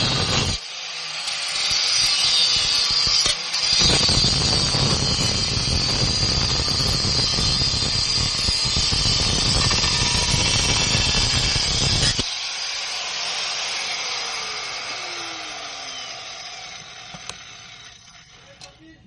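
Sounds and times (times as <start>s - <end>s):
angle grinder cutting steel: 0.0s - 18.7s.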